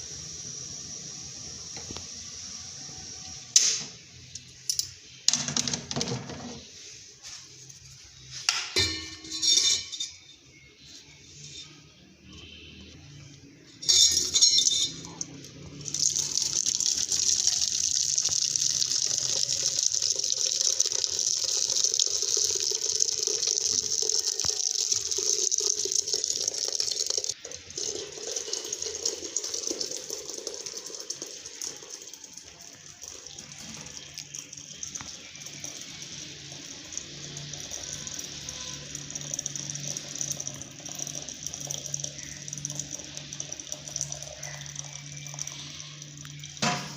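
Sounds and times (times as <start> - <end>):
utensils clattering: 8.5 - 10.4, 13.8 - 15.3
water trickling: 12.8 - 46.9
water running into container: 13.9 - 46.9.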